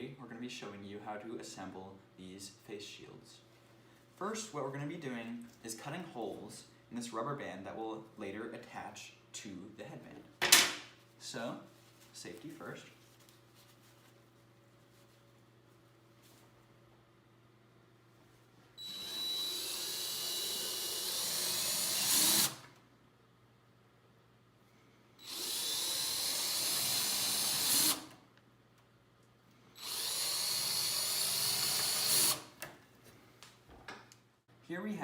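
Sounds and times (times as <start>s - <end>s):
power drill whirring: 18.8s - 22.7s, 25.2s - 28.2s, 29.8s - 32.6s.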